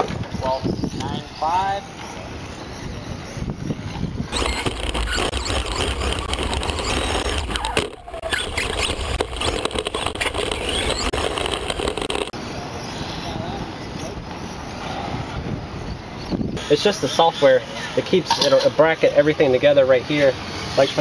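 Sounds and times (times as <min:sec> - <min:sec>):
tyre and motor noise: 0:00.0 - 0:21.0
toy car motor whine: 0:04.3 - 0:12.3.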